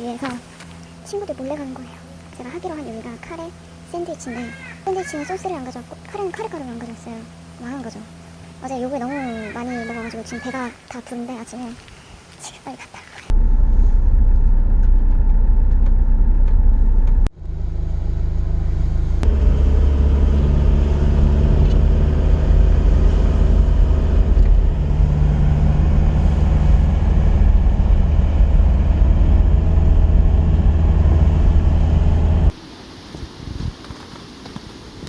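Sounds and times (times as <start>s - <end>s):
van engine and road rumble: 13.2s - 32.6s.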